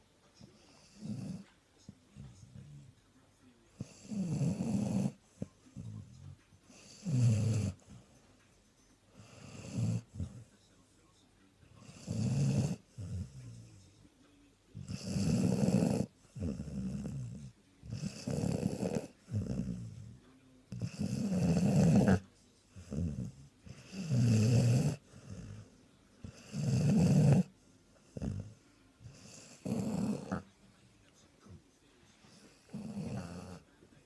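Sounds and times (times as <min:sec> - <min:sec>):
dog snoring loudly: 0:00.6 - 0:01.5, 0:03.8 - 0:05.2, 0:06.7 - 0:07.9, 0:09.2 - 0:10.5, 0:11.8 - 0:13.7, 0:14.8 - 0:20.1, 0:20.7 - 0:30.5, 0:32.3 - 0:33.7.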